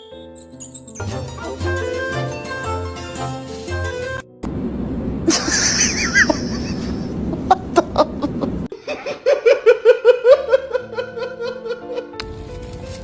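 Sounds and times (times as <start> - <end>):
person laughing: 5.3 - 12.2.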